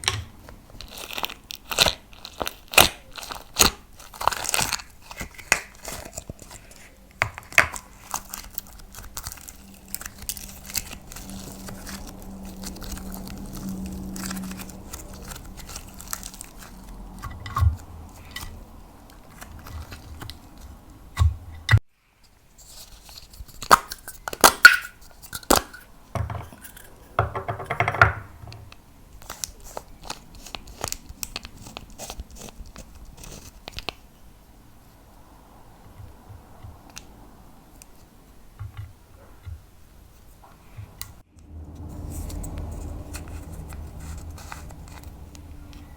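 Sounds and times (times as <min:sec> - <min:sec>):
sticky slime crackling and popping: 0:00.5 - 0:21.2, 0:29.2 - 0:34.0.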